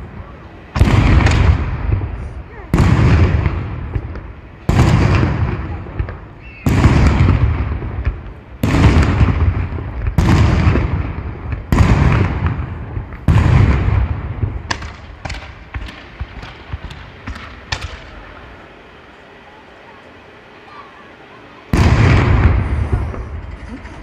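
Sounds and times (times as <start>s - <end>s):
fireworks booms rumbling: 0.0s - 18.7s, 21.7s - 24.0s
small sharp firework cracks: 0.8s - 18.5s.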